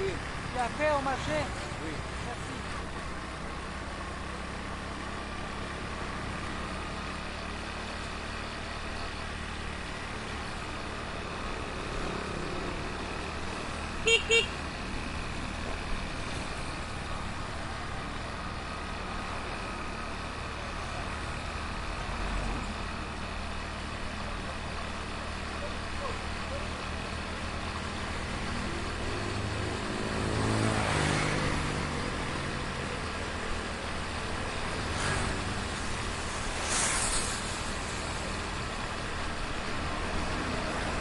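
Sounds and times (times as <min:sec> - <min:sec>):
heavy street traffic: 0:00.0 - 0:41.0
vehicle horn tooting: 0:14.0 - 0:14.6.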